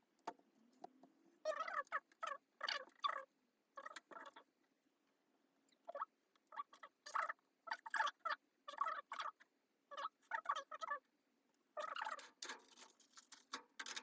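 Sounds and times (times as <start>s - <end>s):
crinkling and scratching handling noise: 11.9s - 14.0s.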